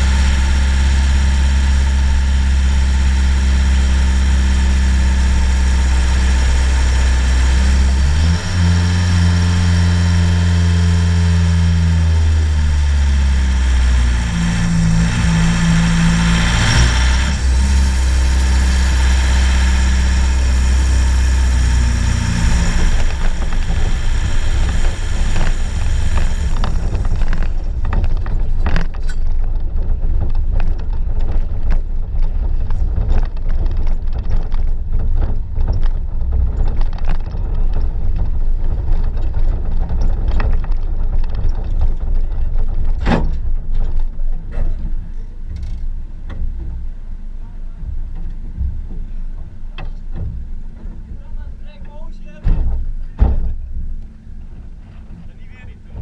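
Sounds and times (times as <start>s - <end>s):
engine hiss: 0.0s - 27.9s
diesel engine idling: 0.0s - 28.7s
rushing noise: 11.8s - 28.4s.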